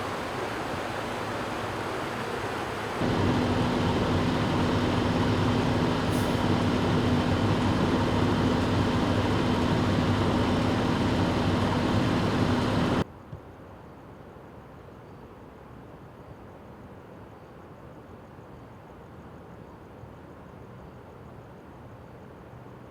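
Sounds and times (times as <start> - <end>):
large engine running: 0.0 - 13.0.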